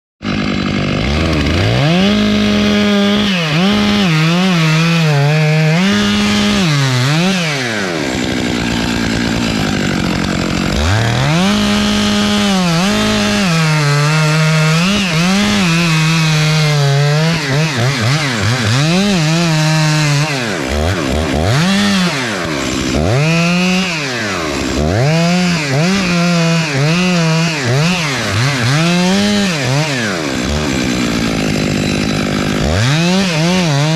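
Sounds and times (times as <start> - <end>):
chainsaw revving: 0.2 - 33.9.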